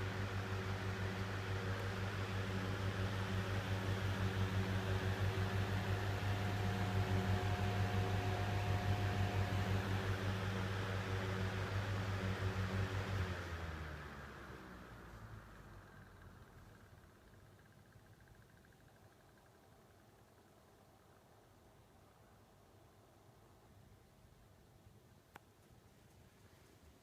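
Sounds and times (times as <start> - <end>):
ventilation fan running: 0.0 - 22.3.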